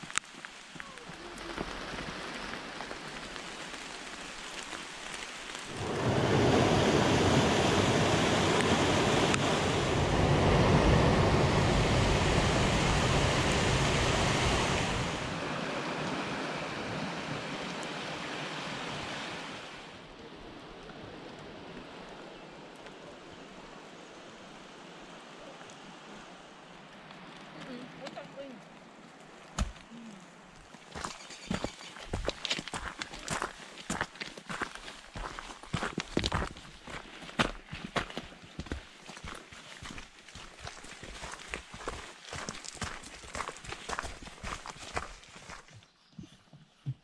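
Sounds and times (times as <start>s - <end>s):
running water rushing: 0.0s - 45.7s.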